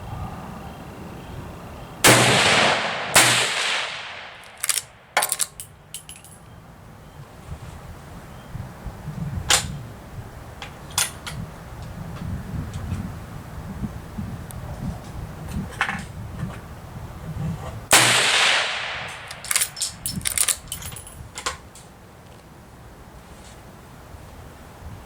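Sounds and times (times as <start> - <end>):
rifle shots with echo: 2.1 - 5.2, 17.9 - 20.0
rifle lever clicks: 4.4 - 6.4, 19.1 - 21.1.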